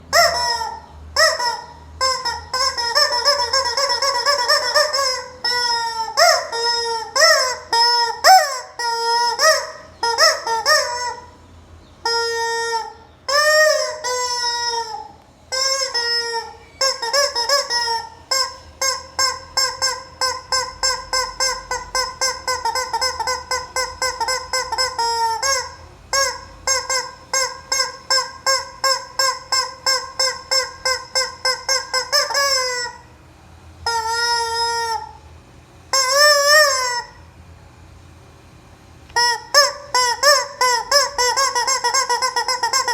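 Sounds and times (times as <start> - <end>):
rubber chicken toy squeaking: 0.0 - 33.1, 33.9 - 35.2, 35.9 - 37.2, 39.1 - 42.9.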